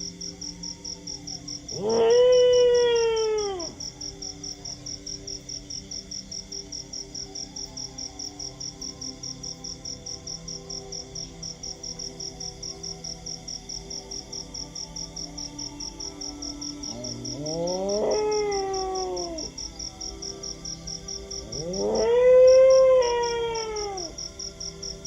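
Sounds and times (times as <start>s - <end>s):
dog howling: 1.4s - 3.9s, 16.8s - 19.6s, 21.4s - 24.3s.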